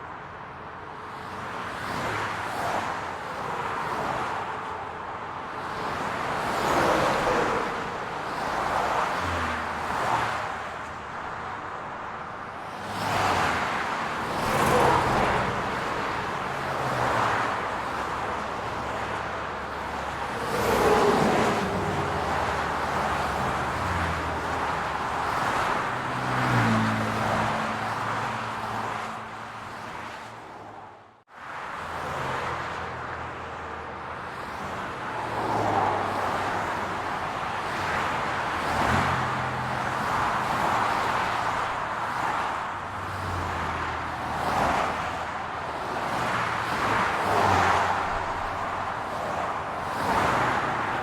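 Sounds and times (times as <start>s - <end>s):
cars passing: 0.0s - 51.0s.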